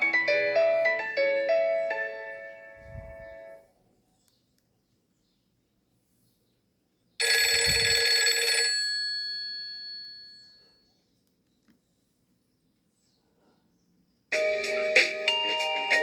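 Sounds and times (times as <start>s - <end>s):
bell-like phone ringtone: 7.2s - 10.6s.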